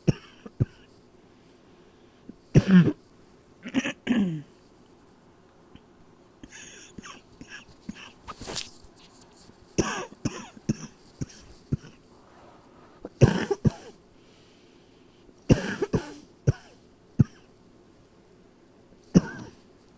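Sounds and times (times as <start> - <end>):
person coughing: 0.0 - 0.9, 2.6 - 3.0, 3.6 - 4.5, 6.4 - 8.2, 9.8 - 12.0, 13.0 - 14.0, 15.5 - 17.5, 19.2 - 19.6.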